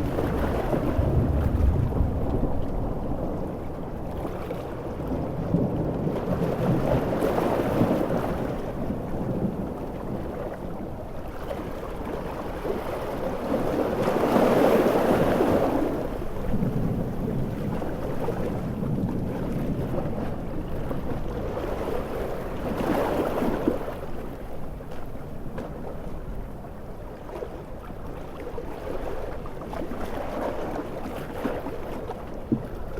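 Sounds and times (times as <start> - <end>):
rushing wash of surf: 0.0 - 25.3
ocean waves breaking: 0.0 - 32.9.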